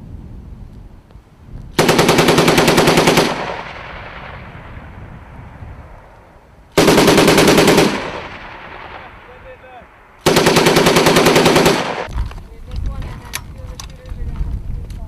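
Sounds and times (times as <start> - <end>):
machine gun bursts: 1.8 - 3.9, 6.8 - 8.4, 10.2 - 12.1
gunfire echo: 1.8 - 12.1.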